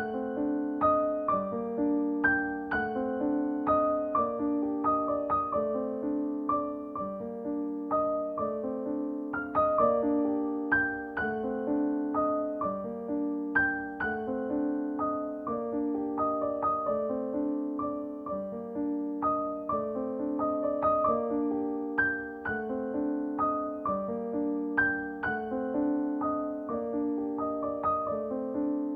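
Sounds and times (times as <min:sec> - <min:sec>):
gentle piano melody: 0:00.0 - 0:28.9.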